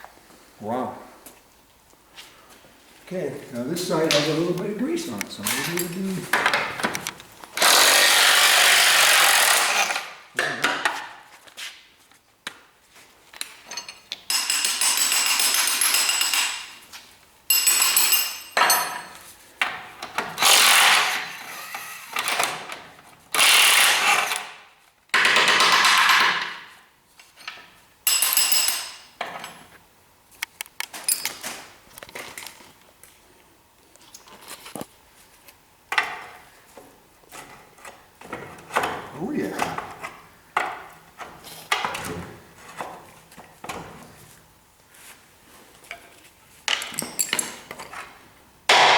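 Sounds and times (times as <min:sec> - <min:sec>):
power tool bursts: 0:07.6 - 0:10.2, 0:20.4 - 0:22.5, 0:23.3 - 0:24.5.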